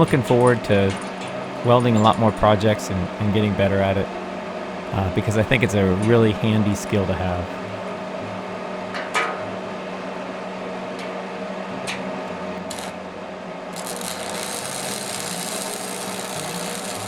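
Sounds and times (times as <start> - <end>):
steady machine hum: 0.0 - 17.0
hiss: 13.8 - 17.0.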